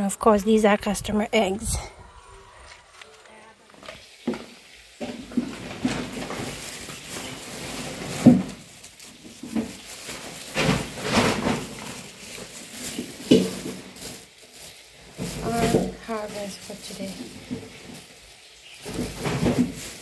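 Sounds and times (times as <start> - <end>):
objects knocking and scraping: 3.7 - 14.3, 15.1 - 18.1, 18.8 - 20.0.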